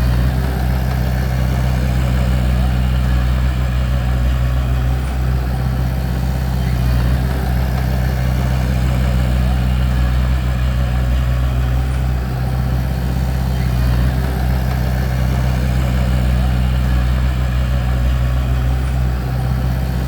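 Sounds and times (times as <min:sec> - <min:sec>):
bulldozer diesel engine running: 0:00.0 - 0:20.0.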